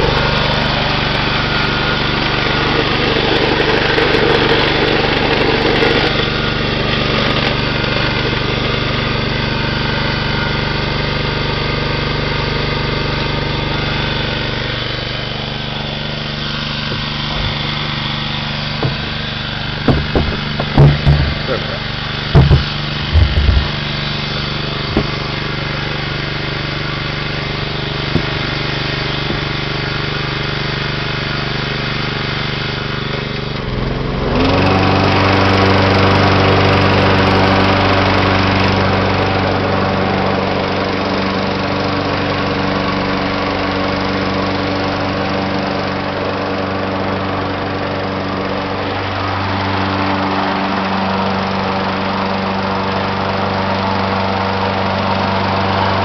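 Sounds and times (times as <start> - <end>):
lawn mower engine running: 0.0 - 56.0
knocks: 18.8 - 21.6, 22.3 - 23.8, 24.9 - 25.2, 28.1 - 28.5.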